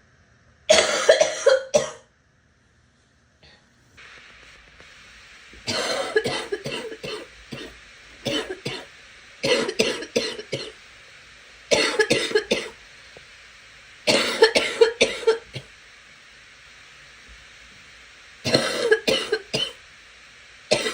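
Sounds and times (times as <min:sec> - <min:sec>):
faint steady hiss: 0:00.0 - 0:20.9
girl coughing: 0:00.7 - 0:02.1, 0:05.7 - 0:07.7, 0:08.3 - 0:10.8, 0:11.7 - 0:12.8, 0:14.1 - 0:15.7, 0:18.5 - 0:19.8.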